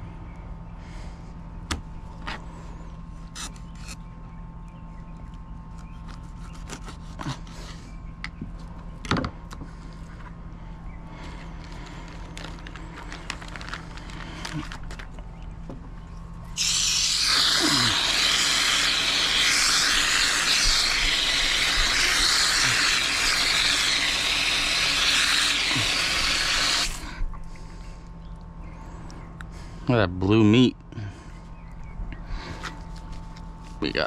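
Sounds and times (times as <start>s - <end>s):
faint clicks and scrapes: 11.3s - 15.3s
water running from a tap: 16.6s - 27.0s.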